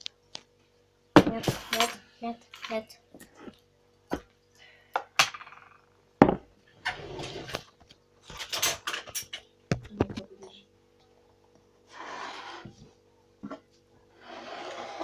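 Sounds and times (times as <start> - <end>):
faint steady hum: 0.0 - 15.0
kitchenware knocking and clinking: 6.2 - 6.5.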